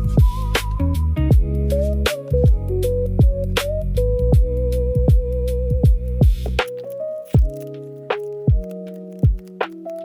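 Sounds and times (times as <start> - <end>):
kick drums: 5.1 - 7.6, 8.5 - 9.5.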